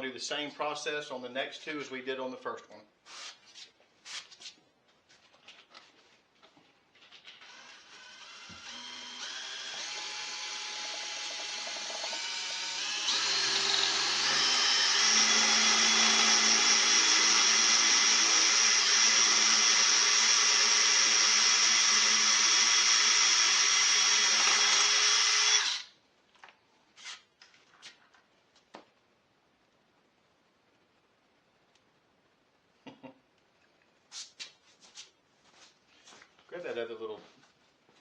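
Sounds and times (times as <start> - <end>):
electric drill boring steel: 7.4 - 25.9.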